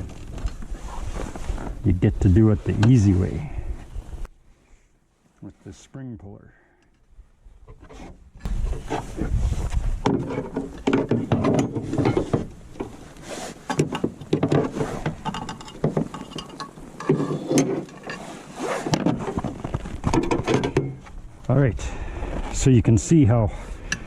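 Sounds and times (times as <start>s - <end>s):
metal tools clinking: 15.1s - 18.2s.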